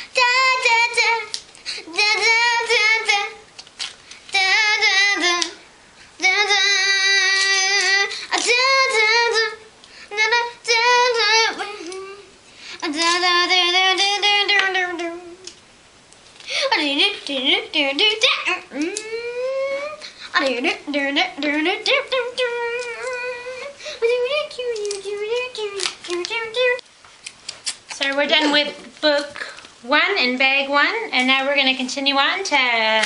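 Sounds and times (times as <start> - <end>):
high voice singing held notes: 16.7 - 26.9.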